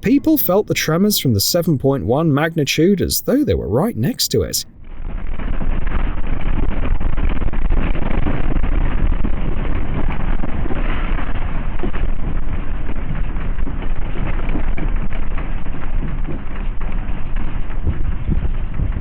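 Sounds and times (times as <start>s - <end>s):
low earthquake rumble: 4.7s - 19.0s.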